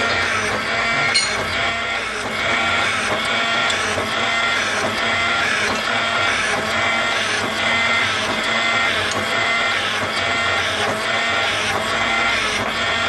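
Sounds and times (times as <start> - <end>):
drilling machine whine and clatter: 0.0 - 13.0.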